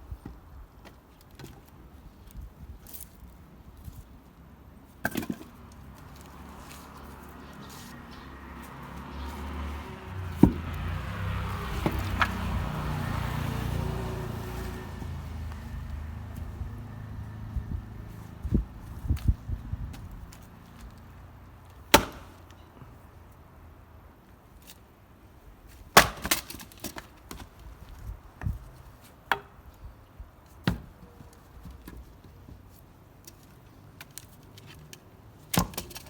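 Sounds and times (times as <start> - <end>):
axe striking wood: 10.3 - 10.7, 11.7 - 12.4, 21.9 - 22.5, 26.0 - 27.4, 30.6 - 31.0, 35.5 - 36.0.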